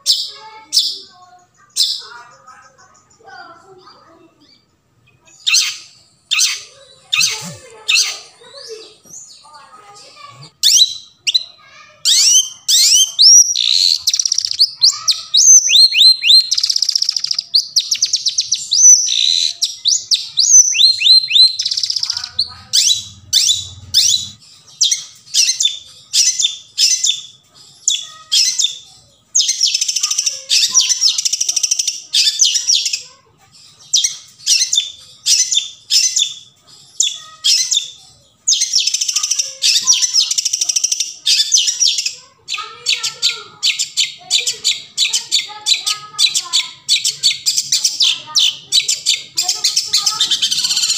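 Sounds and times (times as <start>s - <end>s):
bird singing whistled notes: 12.1s - 27.2s.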